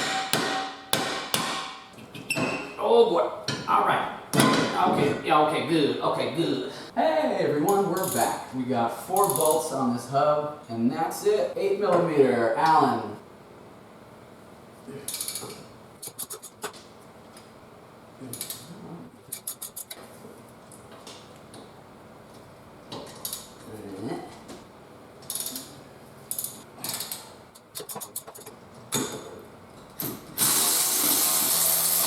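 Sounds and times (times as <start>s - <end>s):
power tool running: 30.4s - 32.0s.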